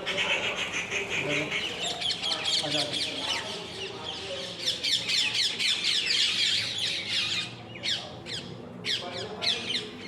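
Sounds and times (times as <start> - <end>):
flock of birds chattering: 0.0 - 5.0.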